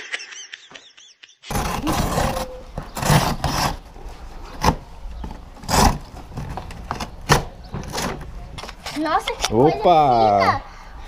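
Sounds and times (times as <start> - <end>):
packaging rubbing and scraping: 1.5 - 9.0.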